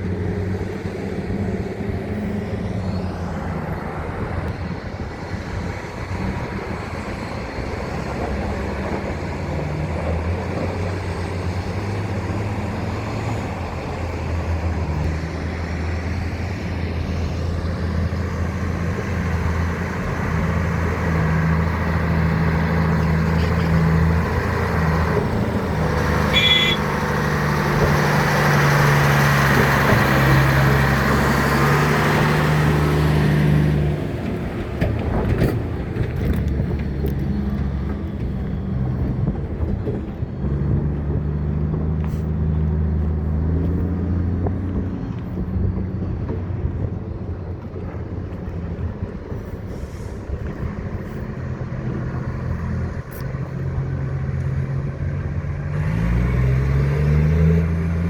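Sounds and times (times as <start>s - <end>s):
large diesel engine running: 0.0s - 56.5s.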